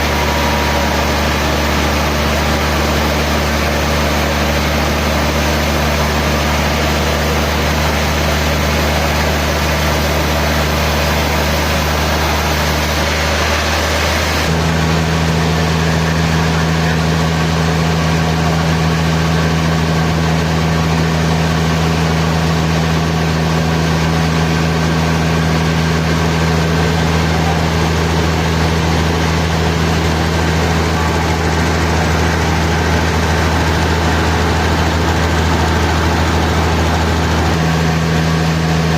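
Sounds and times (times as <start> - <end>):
sawmill machinery humming: 0.0 - 38.9.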